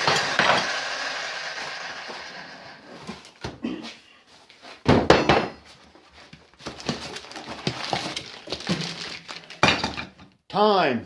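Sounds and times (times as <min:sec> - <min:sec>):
loud rasping burst: 0:00.0 - 0:02.9
tools and packaging handled: 0:05.9 - 0:10.1.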